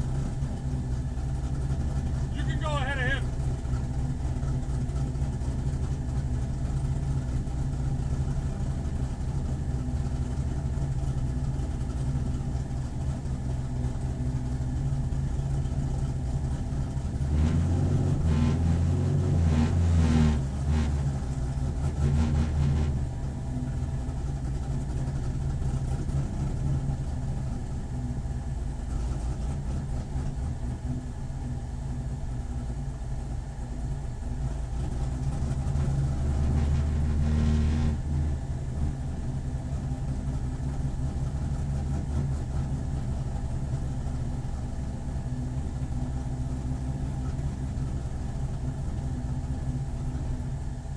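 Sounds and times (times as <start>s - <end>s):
race car engine revving: 17.2s - 23.2s, 35.2s - 39.2s.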